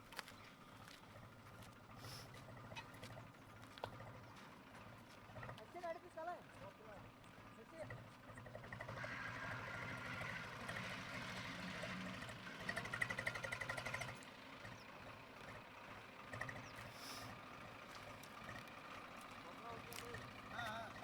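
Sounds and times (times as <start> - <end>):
engine running with fast pulse: 6.6 - 21.0.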